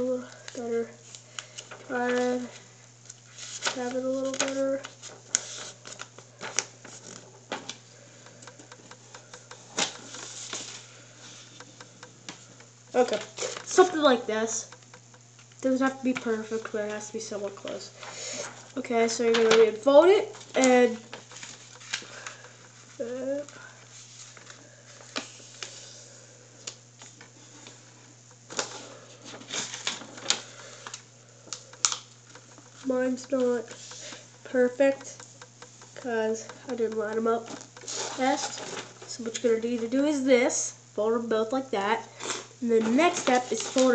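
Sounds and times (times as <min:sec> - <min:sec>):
low steady hum: 0:00.0 - 0:43.9
paper crackling: 0:00.5 - 0:11.6, 0:20.4 - 0:25.7.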